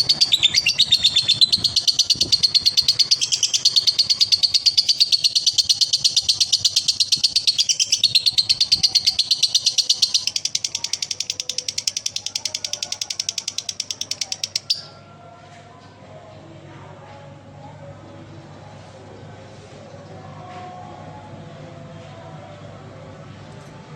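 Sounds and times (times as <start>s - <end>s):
lovebird high-pitched chattering trill: 0.0s - 15.0s.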